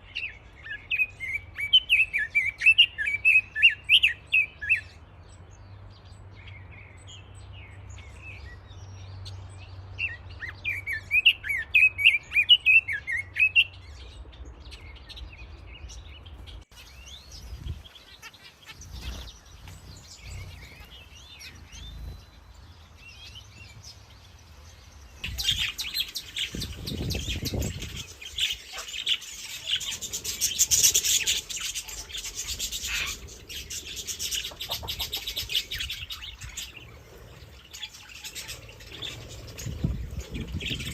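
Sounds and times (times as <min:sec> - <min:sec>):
songbirds chirping: 0:00.0 - 0:40.9
rapid high-pitched bird chatter: 0:16.8 - 0:23.6, 0:25.0 - 0:40.9.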